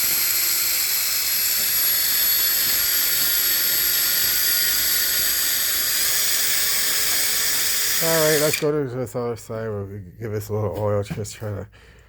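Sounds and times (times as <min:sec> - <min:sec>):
electric drill whining: 0:00.0 - 0:08.7.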